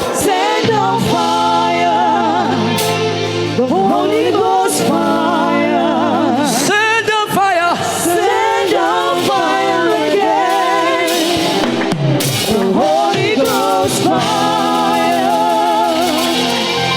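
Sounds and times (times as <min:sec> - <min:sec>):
band accompaniment: 0:00.0 - 0:16.9
person singing gospel: 0:00.0 - 0:16.9.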